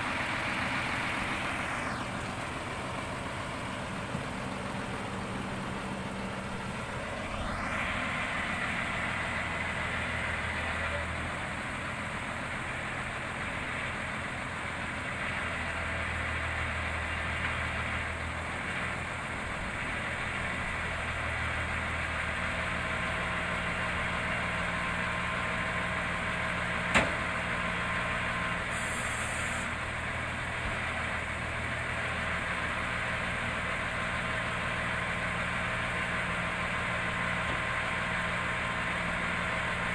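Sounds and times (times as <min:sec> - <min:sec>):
heavy diesel engine running: 0:00.0 - 0:39.9
brief hiss: 0:28.7 - 0:29.8.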